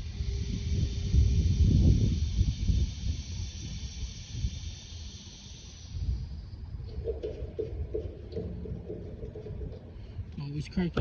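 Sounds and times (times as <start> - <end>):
gas hissing through a valve: 0.0 - 6.6.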